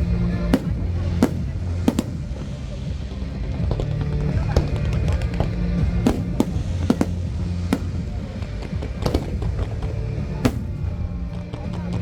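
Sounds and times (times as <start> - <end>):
fireworks bursting: 0.5 - 2.8, 5.9 - 11.4.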